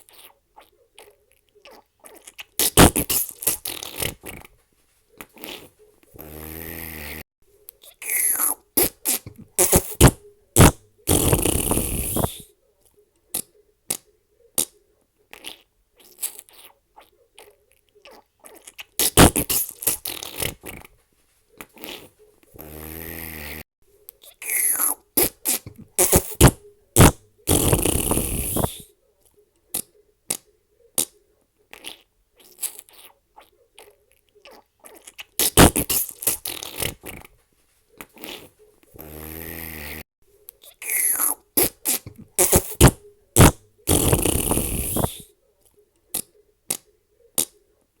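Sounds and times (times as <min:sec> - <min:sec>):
fart sound effects: 0:02.6 - 0:04.5, 0:05.4 - 0:07.2, 0:08.0 - 0:12.4, 0:19.0 - 0:20.9, 0:21.8 - 0:23.6, 0:24.4 - 0:28.8, 0:35.4 - 0:37.3, 0:38.2 - 0:40.0, 0:40.8 - 0:45.2.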